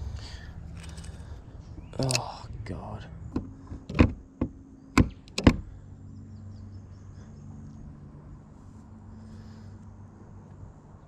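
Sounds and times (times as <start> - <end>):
faint steady hum: 0.0 - 11.0
sharp knocks: 3.3 - 5.7.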